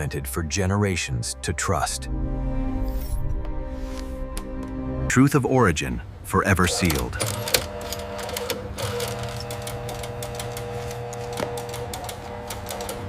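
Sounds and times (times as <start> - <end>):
irregular mechanical clicking: 6.8 - 13.0.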